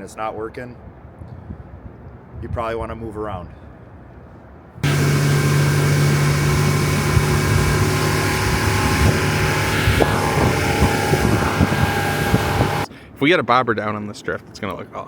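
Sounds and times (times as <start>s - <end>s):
boat motor running: 4.8s - 12.9s
wind and water hiss: 4.8s - 12.9s.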